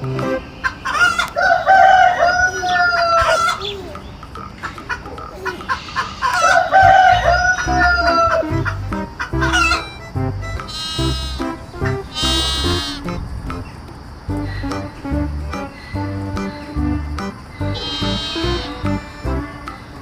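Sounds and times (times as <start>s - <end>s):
rooster crowing: 0.9s - 3.7s, 6.0s - 8.7s, 9.4s - 9.9s, 10.7s - 11.5s, 17.7s - 19.8s.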